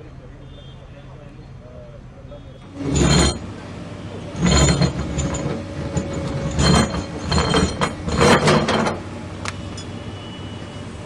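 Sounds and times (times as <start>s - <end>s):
machinery clanking and grinding: 2.6s - 3.6s, 4.2s - 9.1s.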